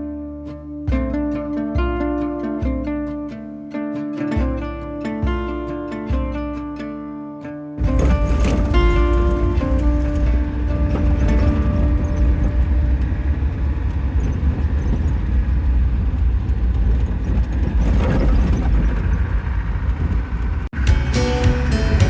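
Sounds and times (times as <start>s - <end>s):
car engine driving: 7.8s - 22.0s
road rumble: 7.8s - 22.0s.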